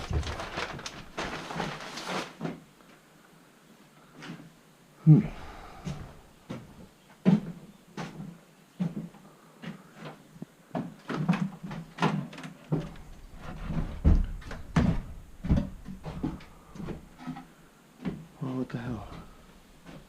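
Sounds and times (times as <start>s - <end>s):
boxes and objects clattering: 0.0s - 2.7s.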